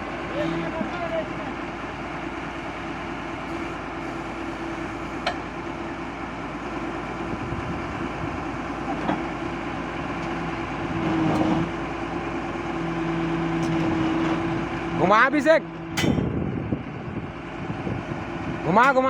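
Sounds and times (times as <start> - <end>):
excavator travelling on tracks: 0.0 - 19.0.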